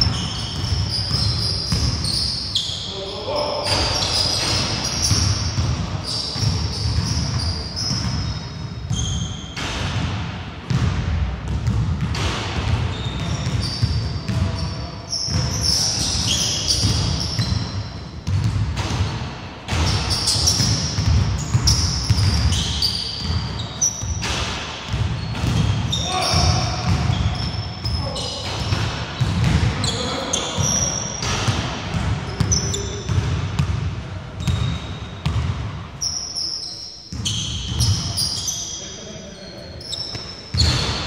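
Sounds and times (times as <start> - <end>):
sneaker squeaks: 0.0 - 10.0, 11.6 - 33.7, 34.4 - 41.0
basketball bouncing on wooden floor: 6.4 - 14.6, 18.2 - 27.4, 28.4 - 29.7, 34.4 - 35.7.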